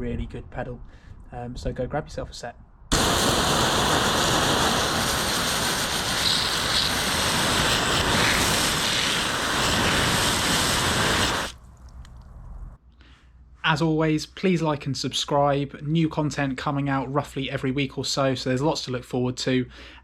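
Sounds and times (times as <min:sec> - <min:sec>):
bike tyre and trail noise: 0:03.0 - 0:11.6.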